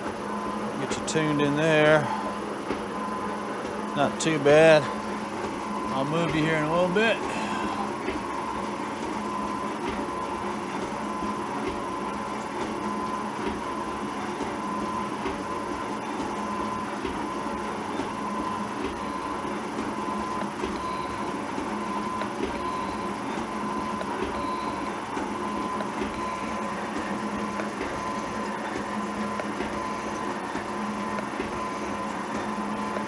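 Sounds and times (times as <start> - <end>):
metal shaper running with whine: 0.0 - 33.0.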